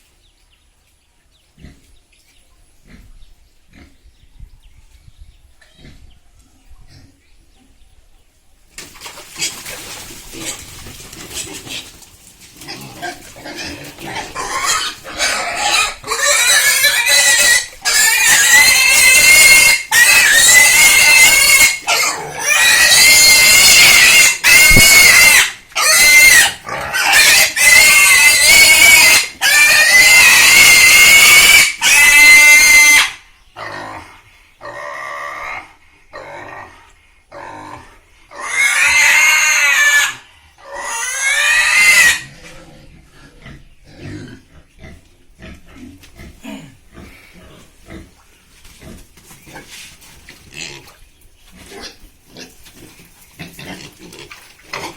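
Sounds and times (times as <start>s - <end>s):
pig squealing: 12.6s - 45.6s.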